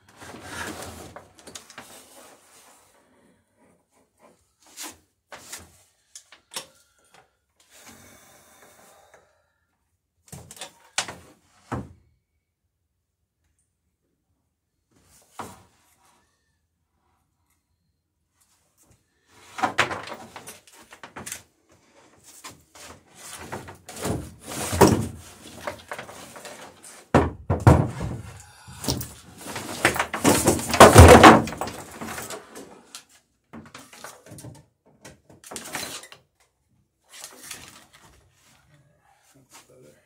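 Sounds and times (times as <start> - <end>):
knocking and clattering: 27.1 - 28.3, 28.9 - 32.2.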